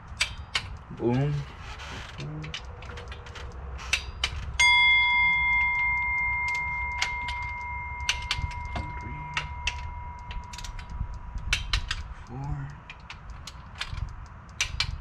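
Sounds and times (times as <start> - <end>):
metal hand tools clicking: 0.0 - 15.0
ringing metallic strike: 4.6 - 10.9.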